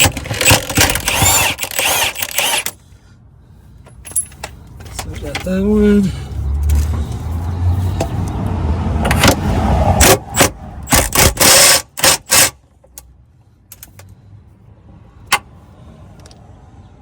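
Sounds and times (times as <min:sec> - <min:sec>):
steady mechanical noise: 0:00.0 - 0:02.9.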